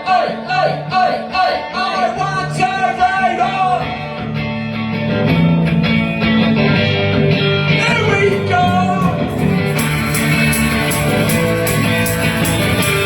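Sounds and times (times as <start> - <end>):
live rock band playing: 3.4 - 13.0.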